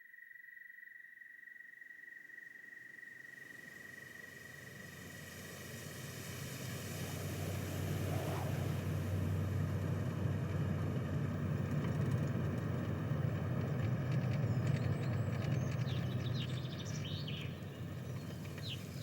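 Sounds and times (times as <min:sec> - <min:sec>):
motor vehicle engine drone: 0:03.2 - 0:19.0.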